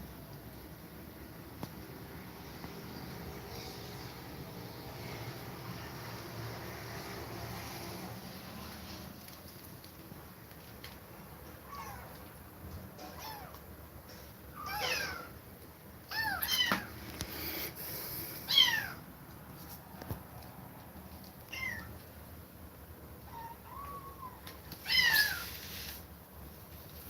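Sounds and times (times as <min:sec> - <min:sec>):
kittens meowing: 0:11.6 - 0:12.2, 0:14.6 - 0:15.4, 0:16.1 - 0:16.9, 0:18.5 - 0:19.0, 0:21.5 - 0:21.9, 0:23.2 - 0:25.6.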